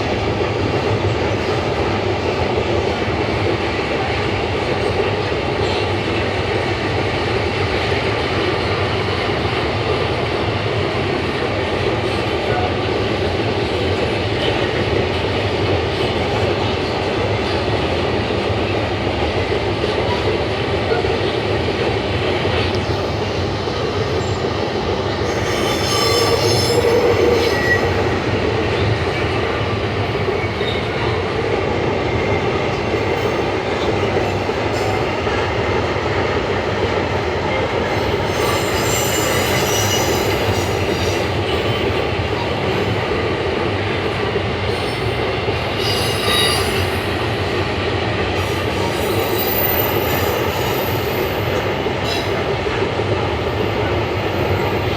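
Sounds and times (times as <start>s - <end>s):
train rolling on rails: 0.0s - 54.9s
train wheels squealing: 22.5s - 31.3s, 37.4s - 54.9s.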